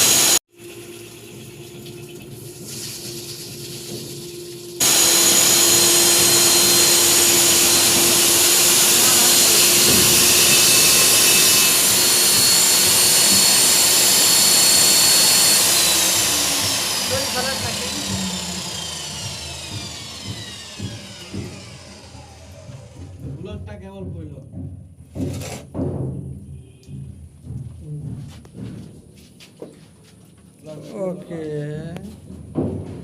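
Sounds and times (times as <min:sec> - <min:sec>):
core drill motor whine: 0:00.0 - 0:02.2, 0:04.8 - 0:23.4
drill bit grinding concrete: 0:00.0 - 0:23.7.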